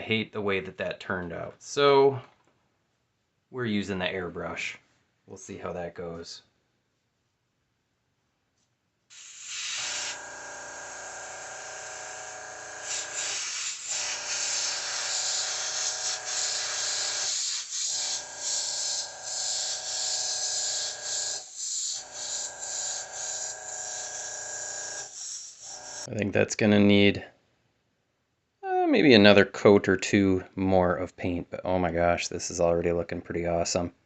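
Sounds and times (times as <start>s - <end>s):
airbrush spraying hiss: 9.1s - 10.2s, 12.7s - 18.2s, 18.8s - 24.4s, 25.0s - 26.1s.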